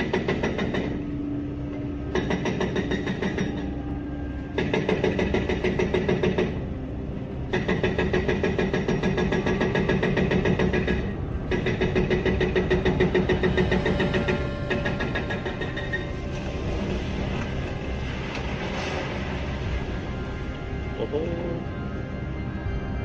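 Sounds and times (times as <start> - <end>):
rapid metallic knocking: 0.0 - 1.1, 2.1 - 3.7, 4.5 - 6.6, 7.5 - 18.7
excavator engine running: 0.0 - 22.4.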